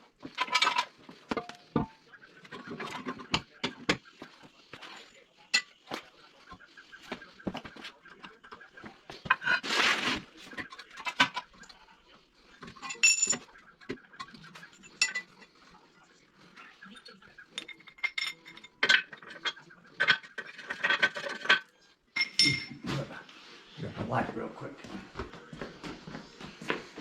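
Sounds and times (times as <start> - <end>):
metal tools clanking together: 0.2 - 4.0, 12.6 - 13.5, 14.8 - 15.4, 17.6 - 22.8.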